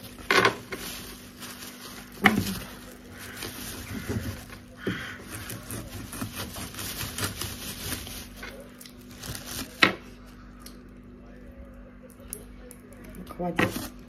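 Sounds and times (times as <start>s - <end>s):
fish being picked apart by hand: 0.0s - 10.9s
faint steady hum: 0.0s - 14.0s.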